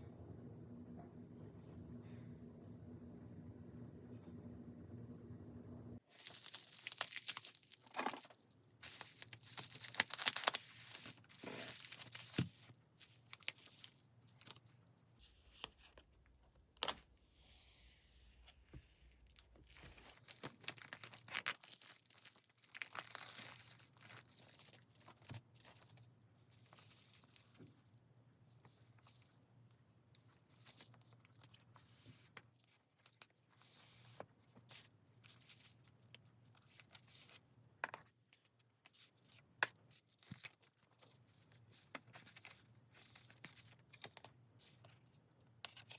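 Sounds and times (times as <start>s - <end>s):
packaging crinkling and tearing: 6.1s - 14.7s, 19.2s - 27.9s.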